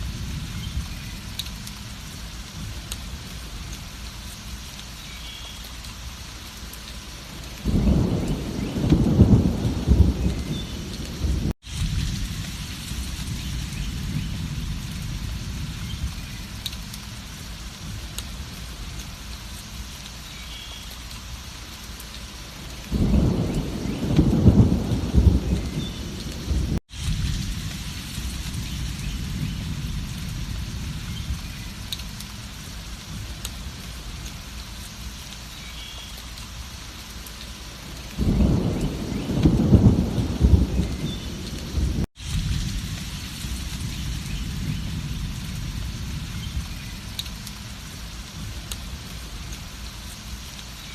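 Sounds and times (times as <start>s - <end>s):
steady rainfall: 0.0s - 50.9s
thunder rolling: 7.6s - 16.2s, 22.9s - 31.8s, 38.1s - 47.1s.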